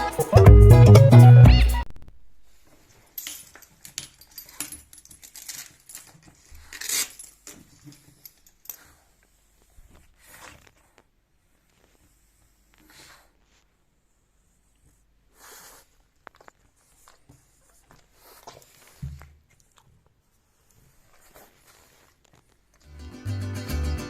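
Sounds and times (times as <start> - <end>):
music: 0.0 - 1.8, 22.9 - 24.0
light metallic jingles: 3.2 - 8.9.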